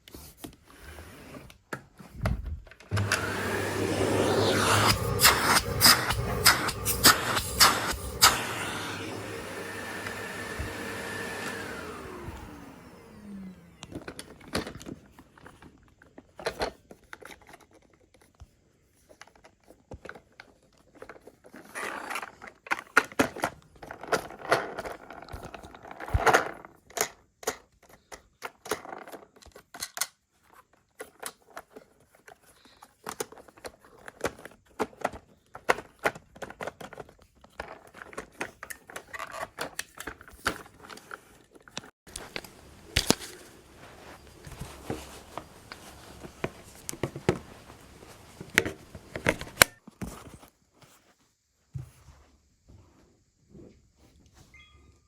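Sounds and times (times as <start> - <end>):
vacuum cleaner motor winding down: 2.9 - 14.9.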